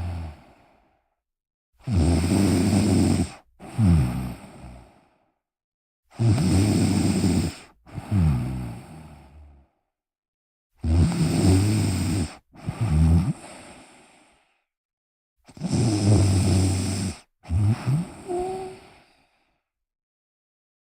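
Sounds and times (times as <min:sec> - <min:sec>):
person snoring loudly: 0:00.0 - 0:00.8, 0:01.8 - 0:05.1, 0:06.1 - 0:09.7, 0:10.8 - 0:14.3, 0:15.5 - 0:19.4.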